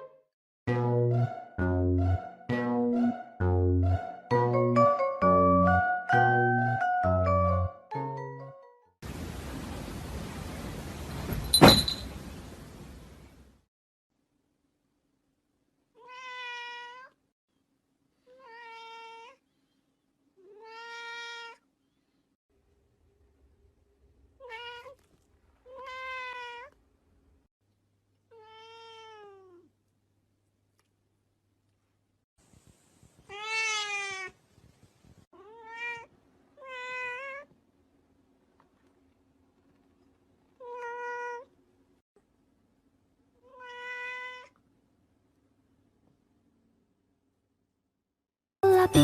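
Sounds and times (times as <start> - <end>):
cat meowing: 16.0 - 17.2, 18.3 - 19.4, 20.4 - 21.6, 24.4 - 26.8, 28.3 - 29.7, 33.3 - 34.4, 35.4 - 37.5, 40.6 - 41.5, 43.4 - 44.6.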